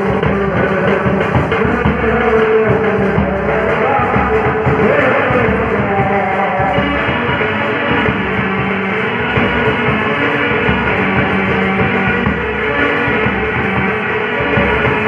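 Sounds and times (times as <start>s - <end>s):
background music: 0.0s - 15.0s.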